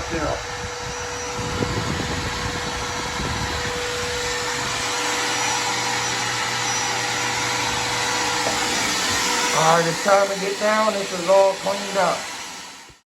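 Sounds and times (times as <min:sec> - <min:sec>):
low hum: 0:00.0 - 0:08.4
vacuum cleaner running: 0:00.0 - 0:13.0.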